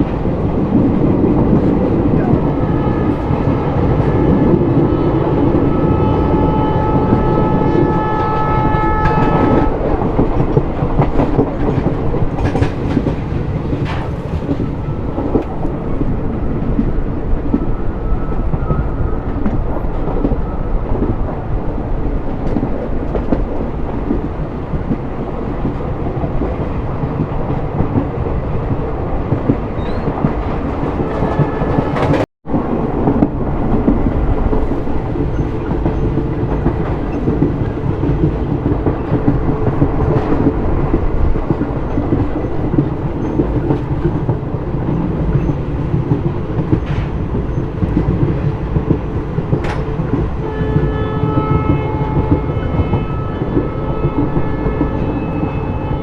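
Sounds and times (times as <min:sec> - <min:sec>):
train wheels on rails: 0:00.0 - 0:56.0
train horn: 0:01.8 - 0:11.8, 0:30.3 - 0:32.2, 0:49.6 - 0:56.0.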